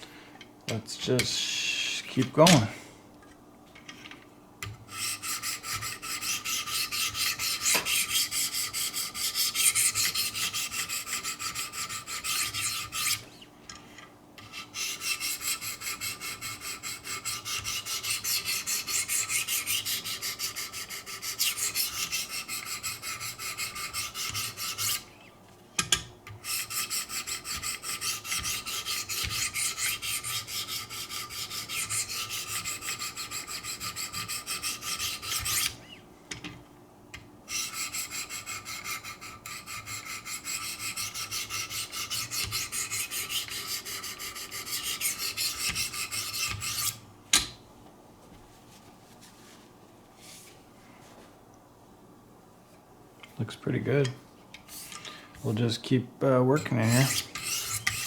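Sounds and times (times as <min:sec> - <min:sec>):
knife rasping on sharpening stones: 0:04.9 - 0:13.2, 0:14.4 - 0:25.0, 0:25.9 - 0:35.8, 0:37.6 - 0:47.0, 0:56.6 - 0:58.0.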